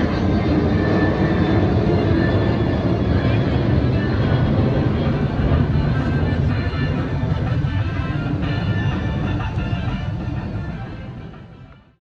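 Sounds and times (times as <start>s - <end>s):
guitar background music: 3.8s - 11.9s.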